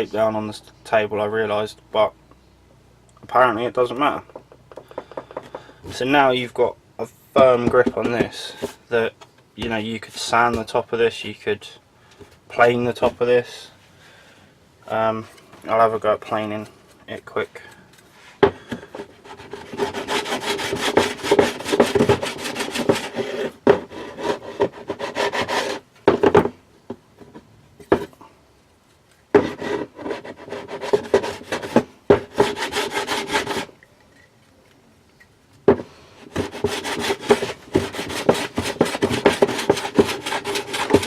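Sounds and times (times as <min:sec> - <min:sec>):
hand plane scraping wood: 0:18.2 - 0:26.4, 0:29.4 - 0:33.8, 0:35.7 - 0:41.0.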